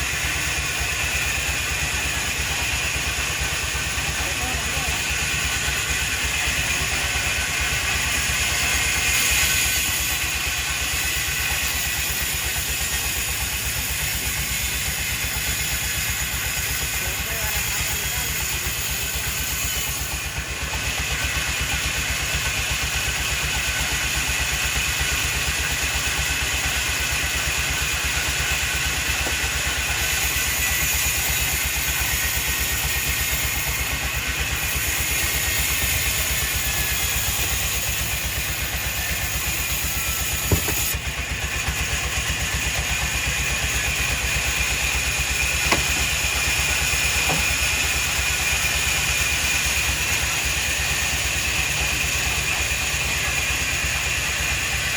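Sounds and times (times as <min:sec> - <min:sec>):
engine running steadily: 0:00.0 - 0:54.9
short knocks: 0:40.4 - 0:40.9, 0:45.6 - 0:46.2, 0:47.2 - 0:47.7.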